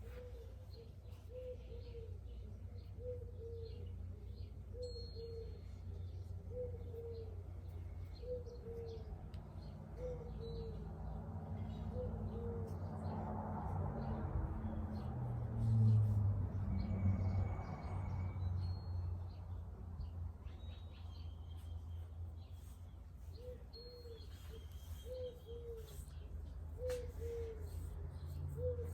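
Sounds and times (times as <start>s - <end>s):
dove cooing: 0.0s - 2.4s, 3.0s - 3.8s, 6.4s - 7.5s, 8.2s - 9.1s, 9.9s - 10.8s, 11.8s - 12.8s, 23.3s - 28.0s, 28.6s - 28.9s
faint bird chirps: 0.0s - 10.9s, 20.4s - 28.9s.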